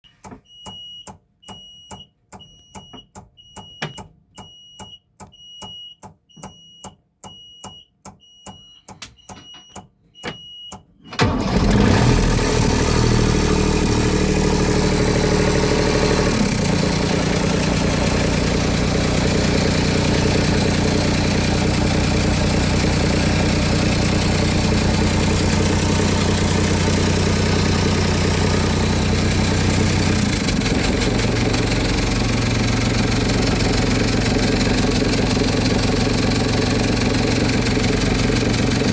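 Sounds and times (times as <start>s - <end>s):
high beep: 0.1s - 10.7s
vehicle engine running: 11.9s - 38.9s.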